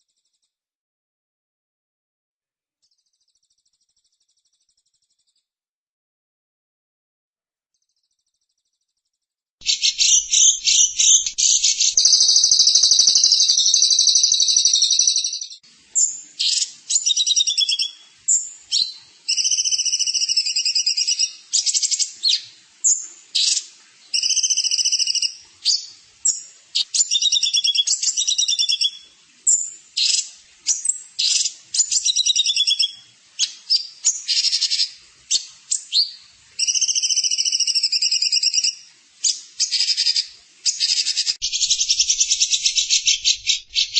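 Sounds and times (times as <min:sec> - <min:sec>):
songbird buzzy trills: 0:09.6 - 0:43.9.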